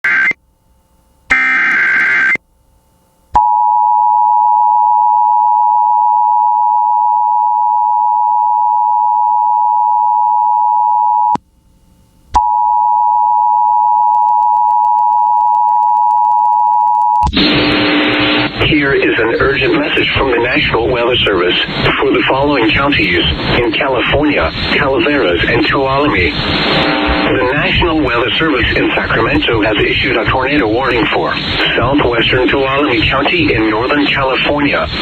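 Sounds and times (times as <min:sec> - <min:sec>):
digital data header tones: 0:01.3 - 0:02.4, 0:12.4 - 0:35.0
announcer speaking: 0:18.5 - 0:35.0.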